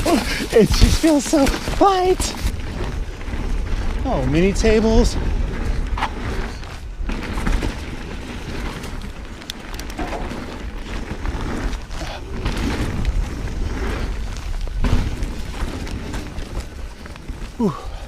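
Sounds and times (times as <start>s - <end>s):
tyres rattling over dirt: 0.0s - 18.0s
wind buffeting microphone: 0.0s - 18.0s.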